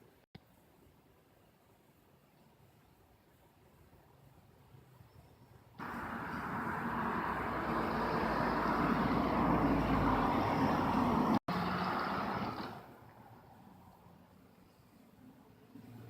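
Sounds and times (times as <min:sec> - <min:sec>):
engine running: 0:05.8 - 0:13.0.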